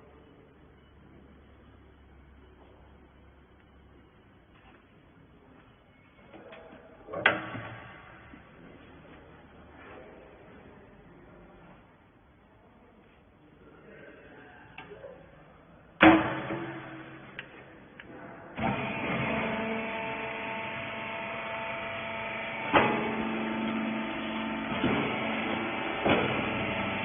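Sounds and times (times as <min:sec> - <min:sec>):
loud metallic bang: 0:16.0 - 0:17.4
baler machinery humming: 0:16.0 - 0:27.0.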